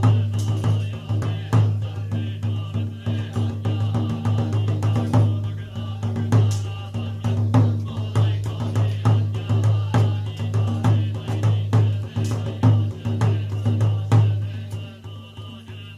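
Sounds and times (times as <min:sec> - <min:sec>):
monotone sutra chanting: 0:00.0 - 0:15.9.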